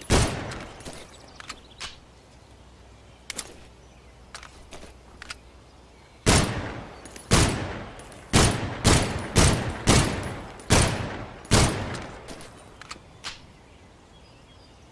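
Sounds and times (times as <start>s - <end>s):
pistol shots echoing: 0.0s - 1.0s, 6.2s - 12.5s.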